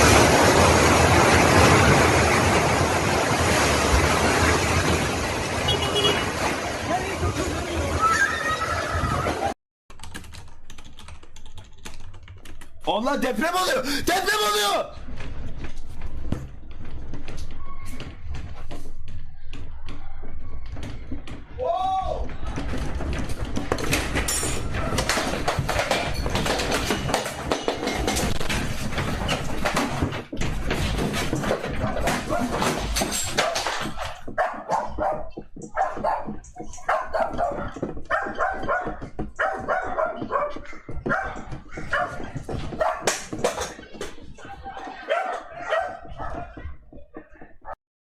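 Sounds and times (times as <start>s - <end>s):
objects rattling and knocking: 14.9s - 47.8s
dog barking: 34.4s - 43.2s, 45.0s - 46.6s.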